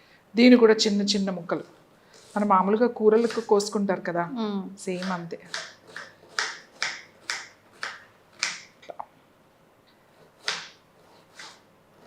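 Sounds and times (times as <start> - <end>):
knife chopping on cutting board: 3.2 - 3.5, 4.9 - 8.7, 10.4 - 11.6.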